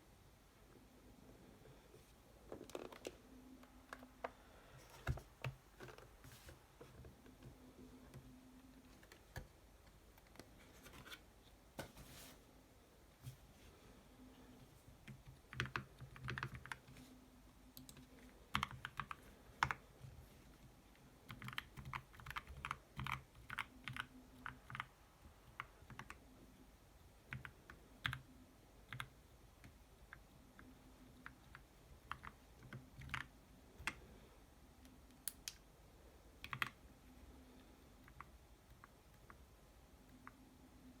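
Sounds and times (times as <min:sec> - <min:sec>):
mechanical keyboard typing: 0:15.1 - 0:16.9, 0:17.8 - 0:19.8, 0:21.2 - 0:24.9, 0:25.5 - 0:26.2, 0:31.2 - 0:34.0, 0:36.4 - 0:36.8.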